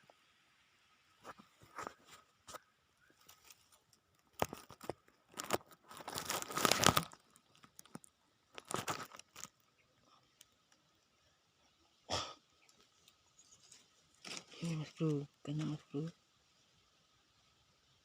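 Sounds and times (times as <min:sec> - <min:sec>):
rustling and crinkling: 0:01.2 - 0:10.8, 0:12.7 - 0:16.0.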